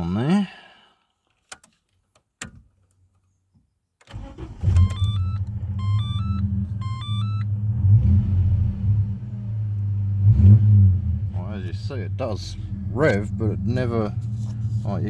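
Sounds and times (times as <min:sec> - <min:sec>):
car engine starting and idling: 0:04.1 - 0:15.0.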